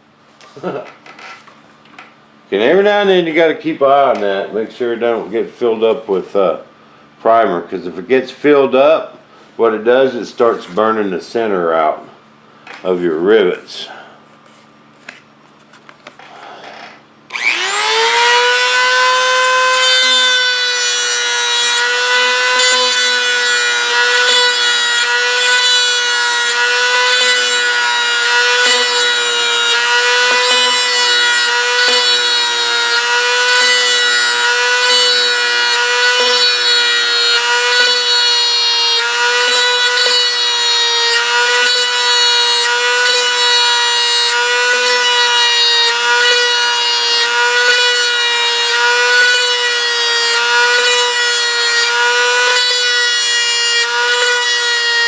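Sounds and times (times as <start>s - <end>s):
rotary tool whirring: 16.1s - 54.8s.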